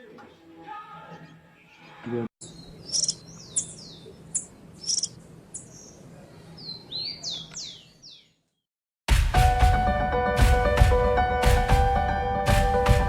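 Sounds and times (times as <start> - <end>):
canary singing: 0.3 - 8.4
music with a beat: 9.1 - 13.0.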